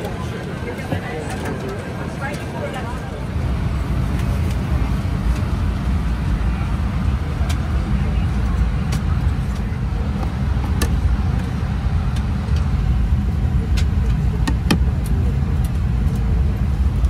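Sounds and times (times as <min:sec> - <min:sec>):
airliner low rumble: 0:00.0 - 0:17.0
sharp clicks and knocks: 0:13.8 - 0:14.9.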